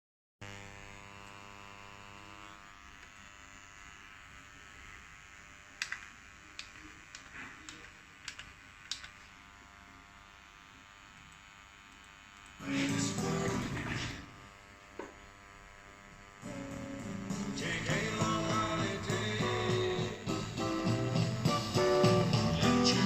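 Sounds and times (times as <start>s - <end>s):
speaker buzzing hum: 0.4s - 23.0s.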